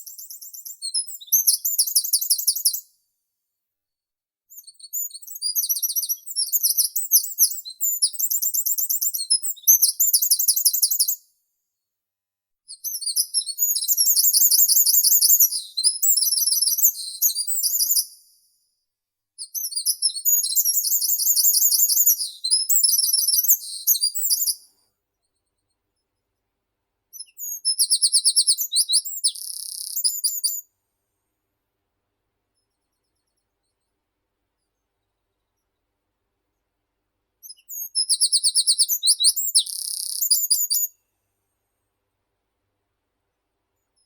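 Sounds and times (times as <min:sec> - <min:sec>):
songbird chirping and trilling: 0:00.0 - 0:02.8, 0:04.5 - 0:11.2, 0:12.8 - 0:18.2, 0:19.4 - 0:24.6, 0:27.1 - 0:30.7, 0:37.4 - 0:41.0.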